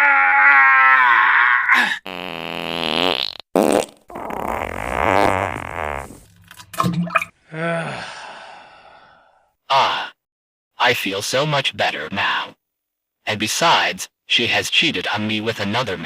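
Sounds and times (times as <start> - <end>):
fart sounds: 2.1 - 6.4
short fart sputters: 2.1 - 6.4.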